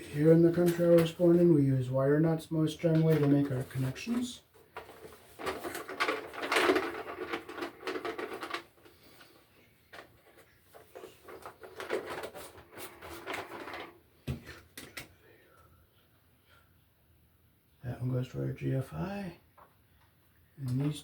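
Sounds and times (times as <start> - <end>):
handling wires and tools: 0.0 - 1.6, 2.8 - 15.1.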